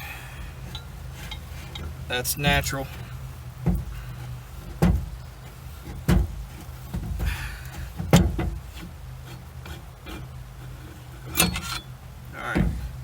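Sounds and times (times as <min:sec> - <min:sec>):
low steady hum: 0:00.0 - 0:13.0
metal scrape: 0:00.4 - 0:03.2, 0:08.6 - 0:12.0
sharp metallic clunks: 0:00.6 - 0:08.9, 0:11.3 - 0:13.0.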